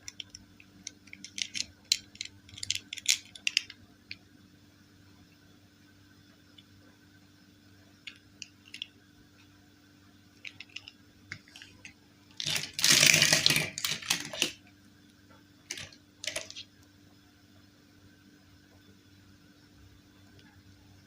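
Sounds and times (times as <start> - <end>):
plastic parts clicking: 0.0 - 3.8, 8.1 - 8.9, 10.4 - 14.6, 15.7 - 16.6
packaging rustling: 10.5 - 14.6, 15.7 - 16.6.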